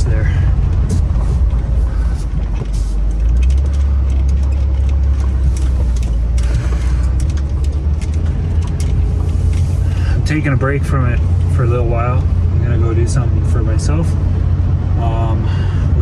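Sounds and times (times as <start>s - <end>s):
faint clicks and rattles: 0.0s - 14.0s
vehicle driving rumble: 0.0s - 16.0s.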